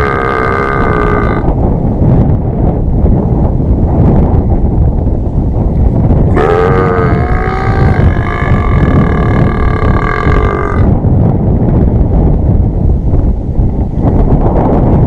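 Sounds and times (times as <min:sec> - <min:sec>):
long loud human burp: 0:00.0 - 0:01.5, 0:06.3 - 0:10.9
wind rumbling on microphone: 0:00.0 - 0:15.0.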